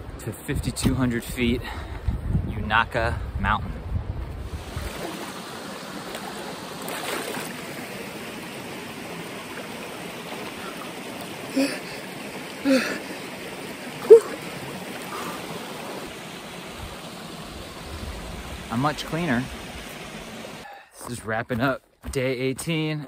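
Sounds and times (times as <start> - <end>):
stream running over rocks: 4.4 - 22.7.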